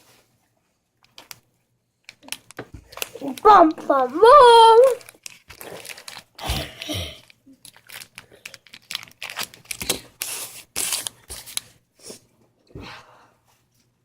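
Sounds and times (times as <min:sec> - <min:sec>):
plastic wrapper crinkling: 0:02.1 - 0:11.8.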